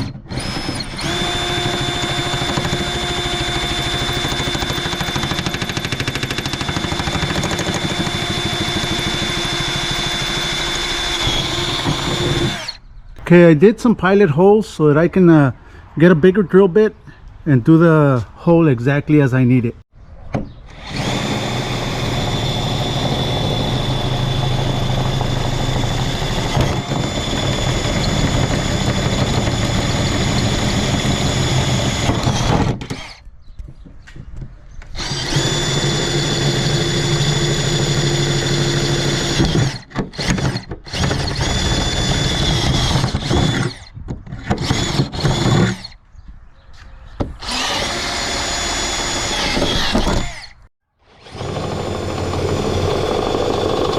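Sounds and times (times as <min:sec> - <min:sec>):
power drill whining: 0:00.0 - 0:12.8, 0:20.7 - 0:33.3, 0:34.9 - 0:46.0, 0:47.4 - 0:53.9.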